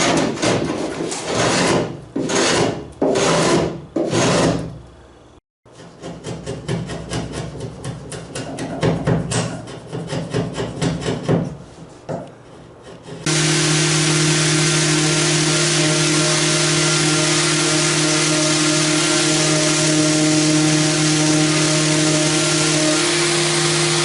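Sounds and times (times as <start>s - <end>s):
hand tool working wood: 0.0s - 4.7s, 5.7s - 24.0s
power tool humming: 13.3s - 24.0s.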